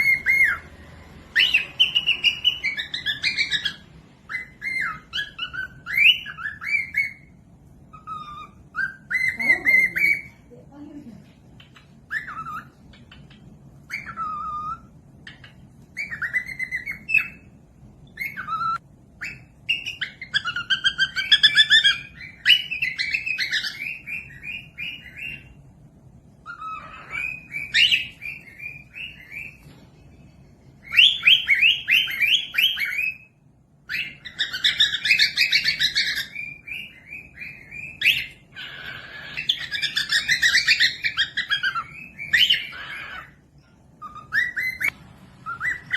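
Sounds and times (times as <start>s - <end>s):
parrot whistling chirps: 0.0s - 10.4s, 11.5s - 29.8s, 30.8s - 45.9s
parrot chattering: 7.9s - 17.5s, 26.4s - 29.5s, 34.0s - 45.9s.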